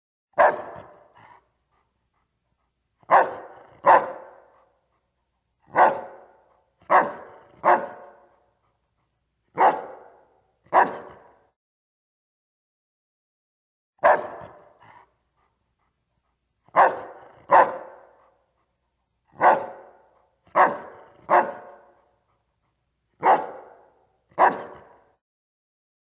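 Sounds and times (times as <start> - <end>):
dog barking deeply: 0.4 - 1.1, 3.1 - 4.6, 5.7 - 8.3, 9.6 - 11.4, 14.0 - 14.8, 16.7 - 18.2, 19.3 - 22.0, 23.2 - 25.2.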